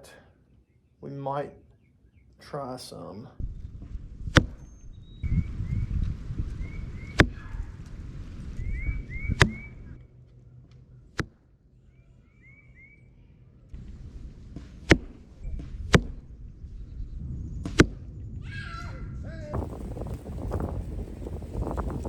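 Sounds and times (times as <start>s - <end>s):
birds chirping: 0.0s - 13.8s, 15.2s - 22.0s
wind buffeting microphone: 3.4s - 10.1s, 13.7s - 22.0s
bow string snapping: 4.3s - 4.6s, 7.2s - 7.4s, 9.4s - 9.7s, 17.6s - 18.0s.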